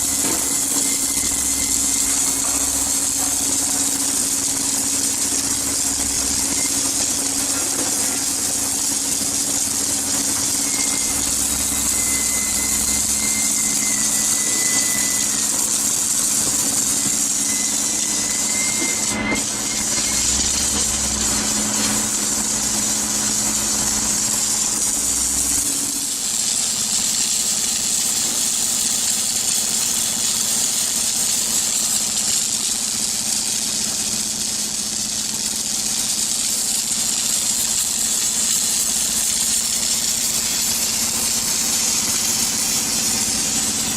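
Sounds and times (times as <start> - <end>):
machinery humming: 0.0 - 26.4, 36.3 - 43.9
high hiss: 0.0 - 26.5.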